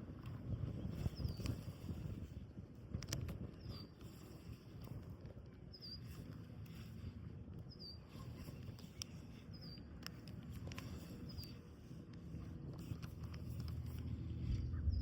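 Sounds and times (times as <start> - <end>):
wind rumble on microphone: 0.0 - 15.0
faint clicks: 2.9 - 5.4, 8.2 - 14.2.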